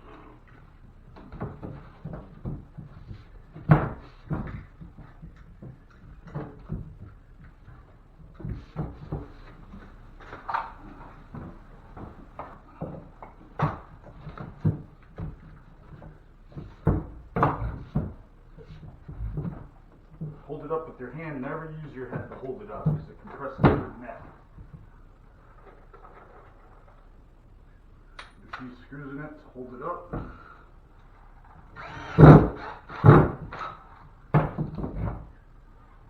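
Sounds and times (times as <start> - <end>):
knocks and thuds of tools: 1.1 - 20.4, 32.2 - 35.3.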